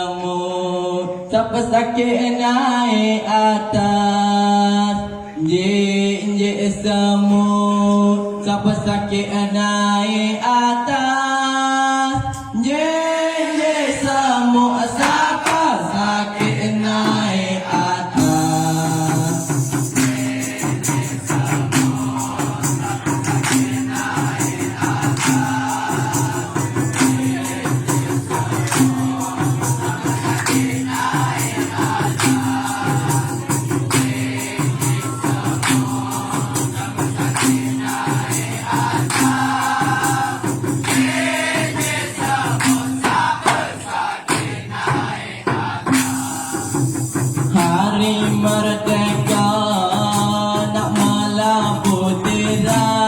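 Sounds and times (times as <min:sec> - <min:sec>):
group of voices chanting: 0:12.8 - 0:19.2, 0:19.9 - 0:46.8
hand drums and shakers: 0:15.0 - 0:53.0.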